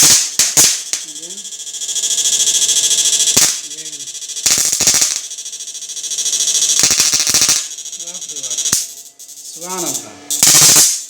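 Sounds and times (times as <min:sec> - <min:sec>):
sharp electric crackling snaps: 0:00.0 - 0:01.4, 0:03.1 - 0:05.4, 0:06.7 - 0:07.8, 0:08.6 - 0:08.9, 0:10.4 - 0:11.0
high-pitched buzzing whine: 0:00.0 - 0:11.0.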